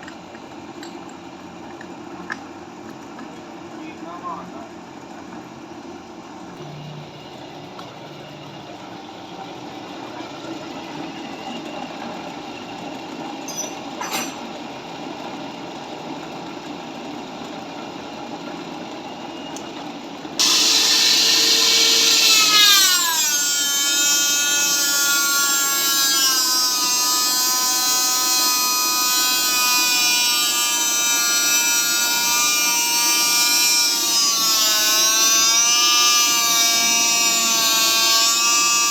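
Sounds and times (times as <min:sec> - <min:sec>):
power grinder on steel: 0:20.4 - 0:38.9.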